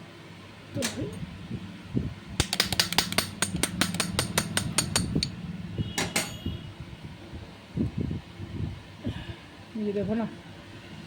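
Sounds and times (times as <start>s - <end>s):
metal hand tool clicking: 2.4s - 5.3s.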